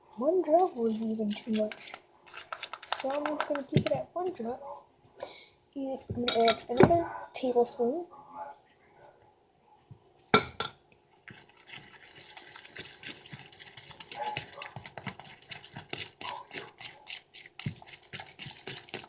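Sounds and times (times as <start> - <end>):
spoon stirring wet mixture in bowl: 0.4 - 4.4, 11.1 - 19.0.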